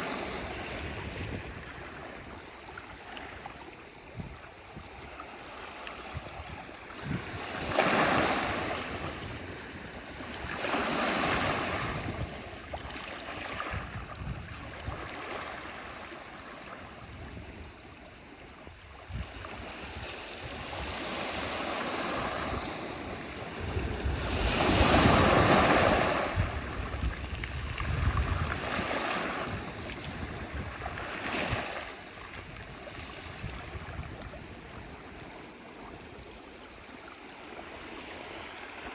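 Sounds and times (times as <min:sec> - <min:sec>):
sea waves breaking: 0:07.0 - 0:14.0, 0:19.5 - 0:38.9.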